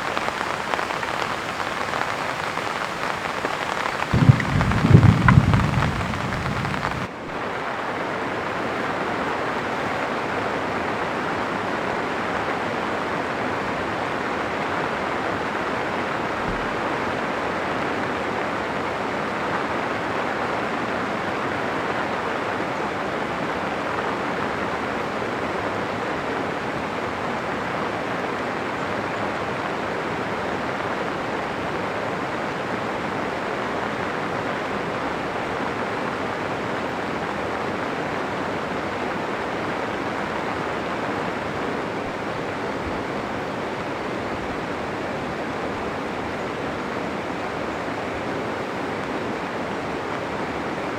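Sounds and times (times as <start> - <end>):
low thunder rumbles: 0.0 - 7.1
rushing water: 0.0 - 22.2.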